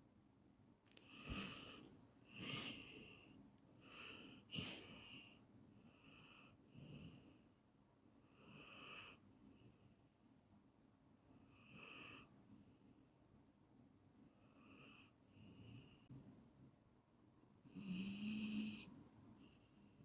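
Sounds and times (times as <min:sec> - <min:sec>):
breathy snores with whistle: 0:17.7 - 0:18.9.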